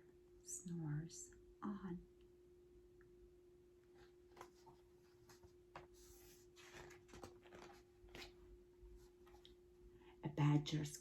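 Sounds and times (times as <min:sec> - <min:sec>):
faint steady hum: 0:00.0 - 0:11.0
paper pages rustling: 0:04.0 - 0:09.5.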